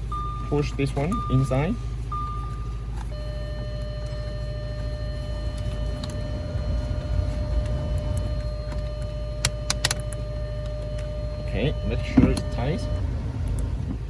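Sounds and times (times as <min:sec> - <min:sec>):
electronic warning tone: 0:00.1 - 0:13.8
low rumble: 0:04.6 - 0:14.0
sharp plastic clicks: 0:09.4 - 0:10.2.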